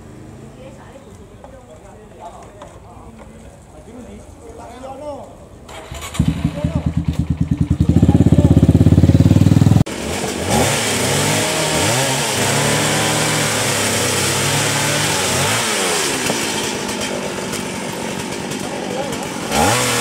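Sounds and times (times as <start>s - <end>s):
small petrol engine revving: 0.0s - 0.8s, 5.7s - 20.0s
engine running with fast throb: 6.1s - 20.0s.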